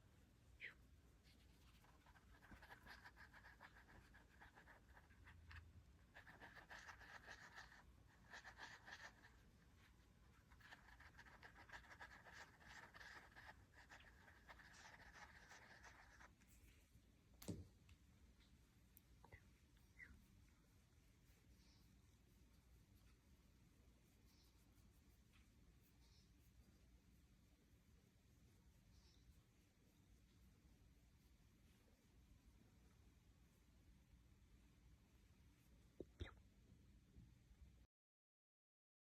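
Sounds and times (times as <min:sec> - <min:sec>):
hands rubbing dog's paw: 0:01.1 - 0:18.6, 0:19.6 - 0:32.4.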